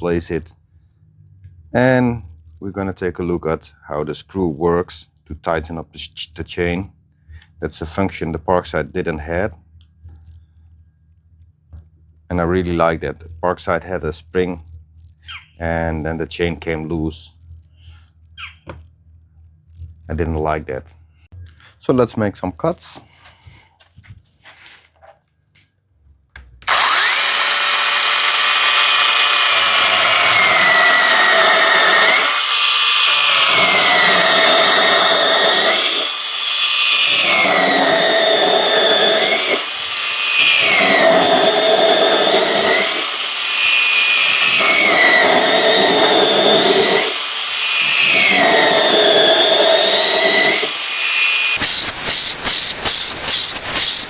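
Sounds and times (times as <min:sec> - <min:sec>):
cordless chainsaw cutting wood: 0:26.6 - 0:54.0
fast pulsing sound: 0:48.5 - 0:54.0.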